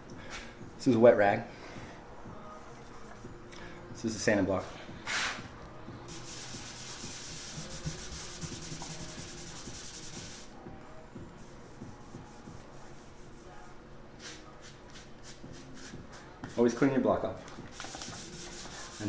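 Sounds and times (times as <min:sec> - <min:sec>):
sanding block rubbing on paint: 0:06.1 - 0:10.5, 0:17.7 - 0:19.0.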